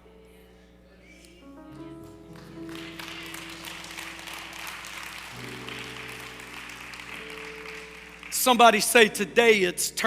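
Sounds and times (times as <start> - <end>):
soft held instrumental chords: 0.0 - 10.0
congregation applauding: 2.0 - 10.0.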